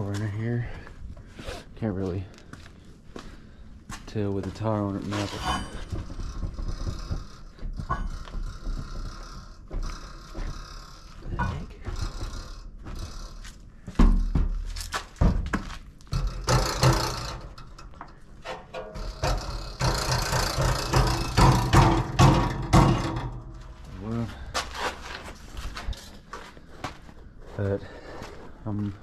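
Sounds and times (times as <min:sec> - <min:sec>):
knocks and rattles: 0:04.4 - 0:26.2
clattering: 0:05.0 - 0:10.6, 0:13.9 - 0:23.9.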